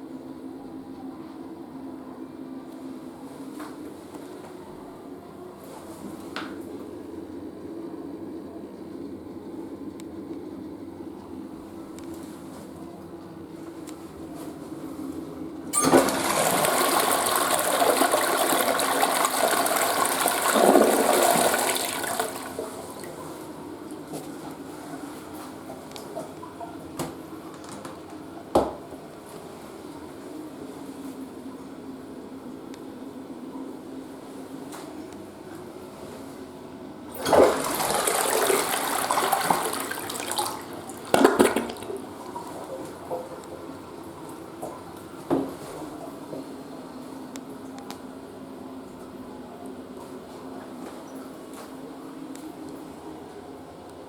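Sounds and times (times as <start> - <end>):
toilet flushing: 15.7 - 28.1, 37.1 - 46.7.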